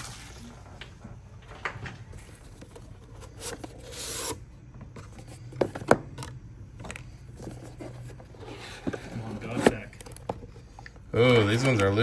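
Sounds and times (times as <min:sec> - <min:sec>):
packaging rubbing scrape: 0:02.3 - 0:04.4.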